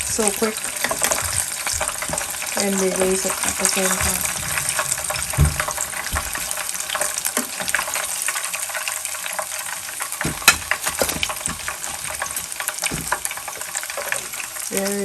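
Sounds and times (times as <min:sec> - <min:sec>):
deep-frying sizzle with crackles: 0:00.0 - 0:15.0
low knocks: 0:03.2 - 0:06.6.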